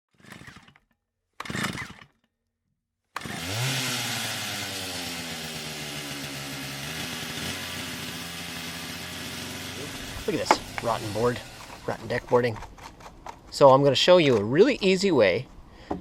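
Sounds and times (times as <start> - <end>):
engine starting and running: 0.1 - 2.3, 3.1 - 13.7.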